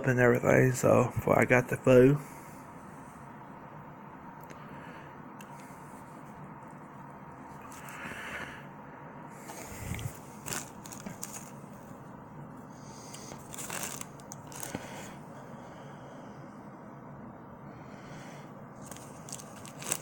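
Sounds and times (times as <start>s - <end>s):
rustling and handling noises: 5.4s - 8.2s, 9.4s - 15.2s, 18.8s - 20.0s.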